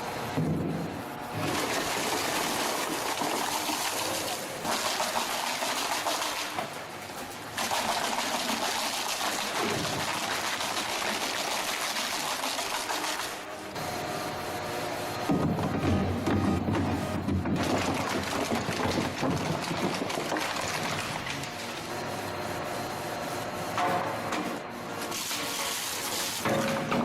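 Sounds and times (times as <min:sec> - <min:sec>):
wood shredding machine grinding: 0:15.2 - 0:21.9.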